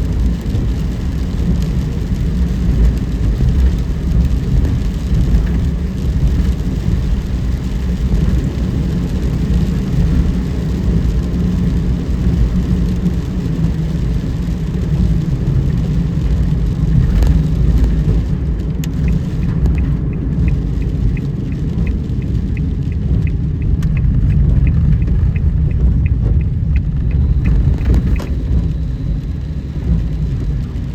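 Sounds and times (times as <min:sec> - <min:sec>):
road and tyre rumble: 0:00.0 - 0:30.9
light regular ticking: 0:09.5 - 0:30.9.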